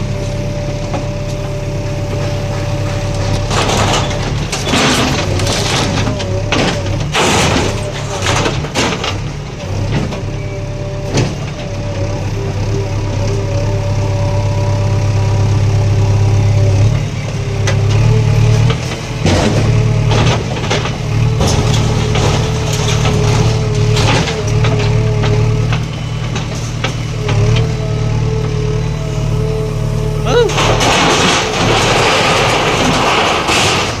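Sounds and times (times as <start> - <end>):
diesel engine running with whine: 0.0 - 34.0
masonry cracking and knocking: 0.9 - 10.4, 17.6 - 27.8, 30.5 - 34.0.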